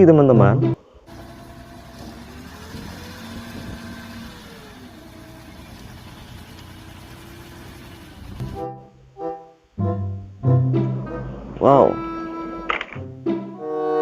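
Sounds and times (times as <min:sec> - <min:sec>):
vehicle engine running: 0:01.1 - 0:08.8.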